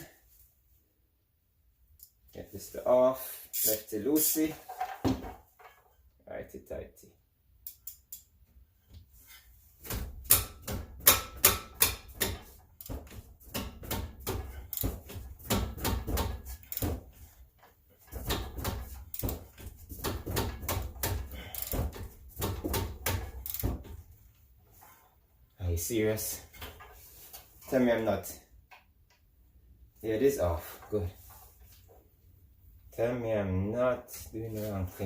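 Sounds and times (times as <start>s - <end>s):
ratchet wrench clicking: 3.5s - 3.9s, 7.6s - 8.3s, 23.4s - 23.6s.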